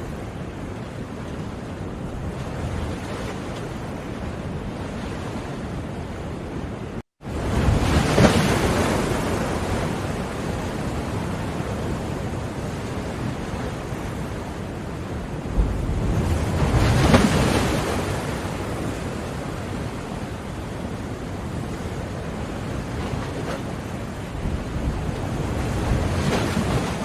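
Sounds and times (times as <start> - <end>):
ocean waves washing ashore: 0.0 - 27.0
wave breaking: 7.3 - 10.0, 15.6 - 18.8.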